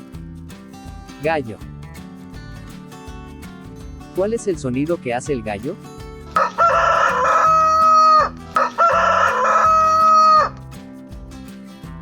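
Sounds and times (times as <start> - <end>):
soft background music: 0.0 - 12.0
rooster crowing: 6.4 - 10.6.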